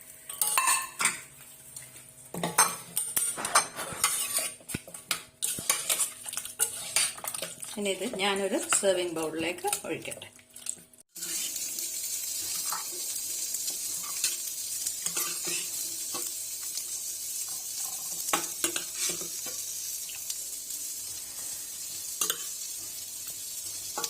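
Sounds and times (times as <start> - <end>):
food sizzling in hot oil: 0.0 - 24.0
spoon stirring and clicking: 2.5 - 9.0.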